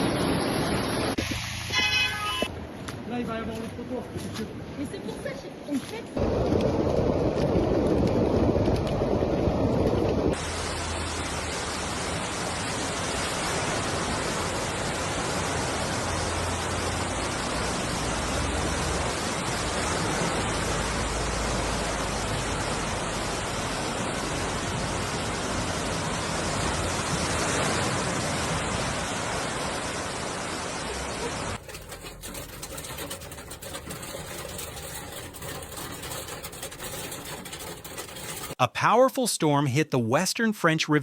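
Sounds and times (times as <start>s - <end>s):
storm water rushing: 0.0s - 2.0s, 6.2s - 30.7s.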